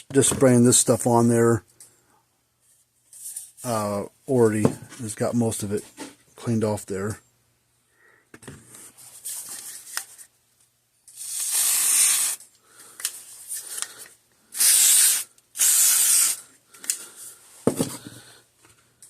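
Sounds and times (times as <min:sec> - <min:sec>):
aerosol can spraying: 0:11.2 - 0:12.4, 0:14.6 - 0:16.4.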